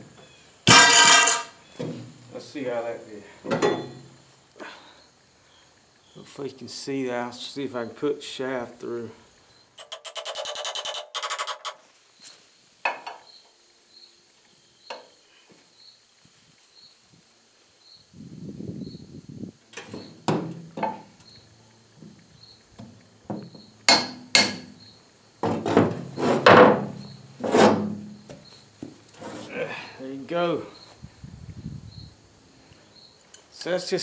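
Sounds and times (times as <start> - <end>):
metal knocks and clanks: 9.8 - 11.8
metal scrape: 9.8 - 11.8.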